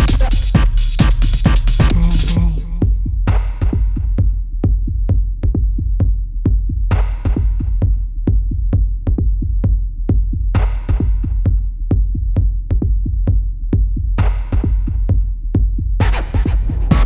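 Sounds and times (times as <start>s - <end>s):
electronic music with drum beat: 0.0s - 4.3s, 10.6s - 11.6s, 14.2s - 15.2s, 16.0s - 17.0s.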